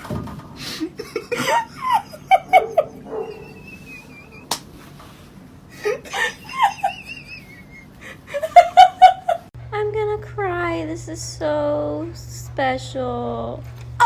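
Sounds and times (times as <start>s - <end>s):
person laughing: 0.7s - 4.6s, 5.7s - 9.5s.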